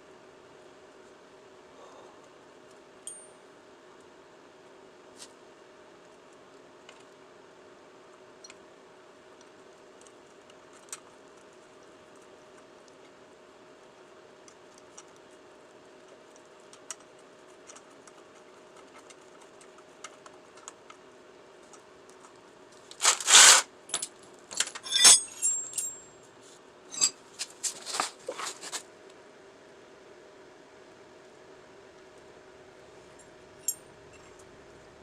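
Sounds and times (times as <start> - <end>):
small metal objects clinking: 23.0 - 26.1, 26.9 - 27.2.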